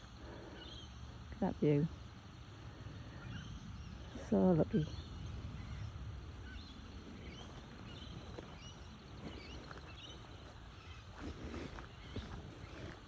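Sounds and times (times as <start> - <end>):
steady low rumble: 0.0 - 13.0
faint bird chirps: 2.7 - 13.0.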